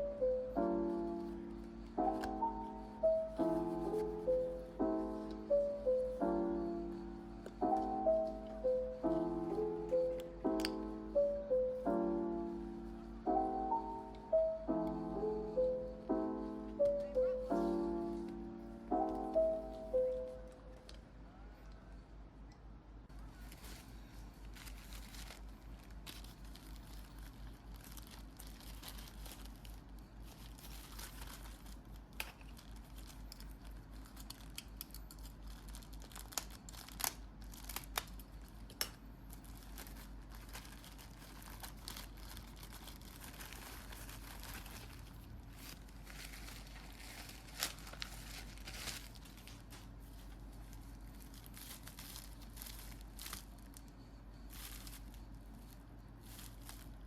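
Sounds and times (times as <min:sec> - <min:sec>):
packaging crinkling and rustling: 0:23.1 - 0:57.0.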